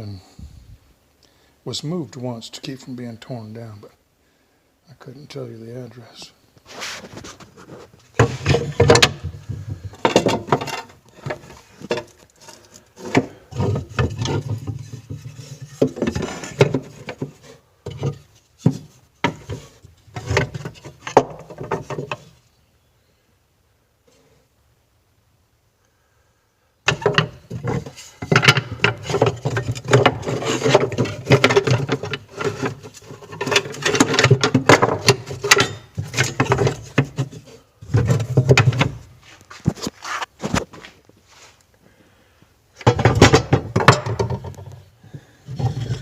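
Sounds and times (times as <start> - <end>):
metal tools clattering in wooden chest: 8.2 - 18.2, 26.9 - 39.0, 42.8 - 44.7.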